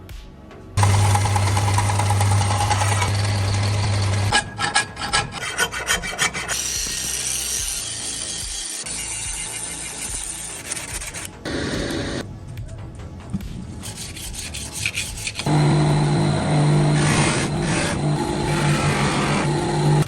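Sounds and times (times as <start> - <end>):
low motor hum: 0.8 - 4.3, 15.4 - 20.0
knife blade grinding: 0.8 - 11.4, 13.9 - 15.5
filing strokes on blade: 4.0 - 11.4, 13.8 - 15.5
rubbing on knife blade: 13.8 - 15.5.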